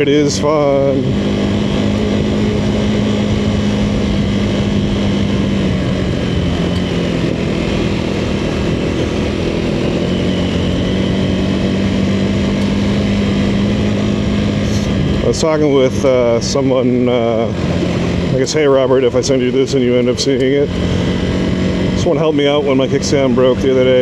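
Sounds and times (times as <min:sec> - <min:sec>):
constant rushing noise: 0:00.0 - 0:24.0
motorcycle engine running: 0:00.0 - 0:24.0.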